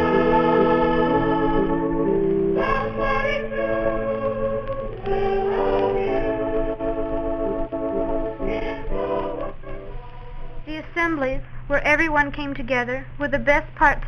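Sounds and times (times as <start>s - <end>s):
electric organ chords: 0.0s - 10.5s
person singing: 0.0s - 10.8s.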